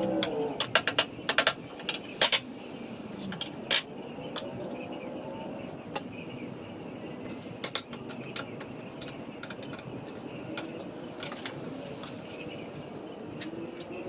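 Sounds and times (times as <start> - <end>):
wood and metal clicks and knocks: 0.1 - 2.5, 7.6 - 12.2.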